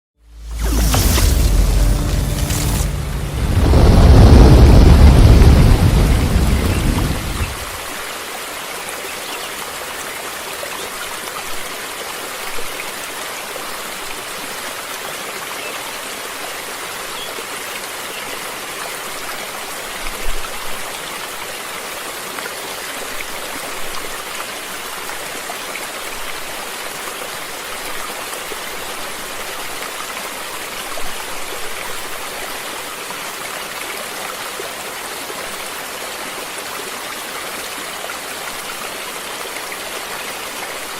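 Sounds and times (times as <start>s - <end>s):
deep rumble: 0.2s - 7.8s
stream water flowing: 0.3s - 40.9s.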